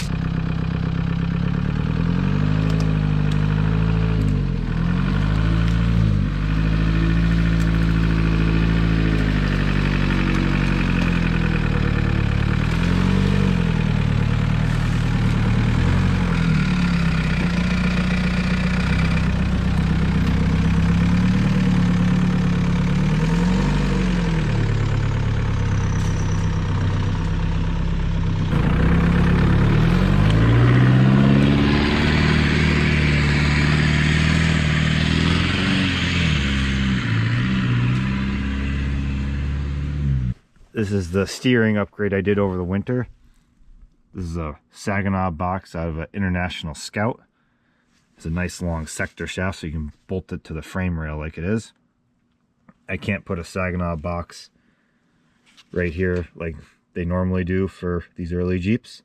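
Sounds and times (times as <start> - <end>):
car engine revving: 0.0 - 40.5.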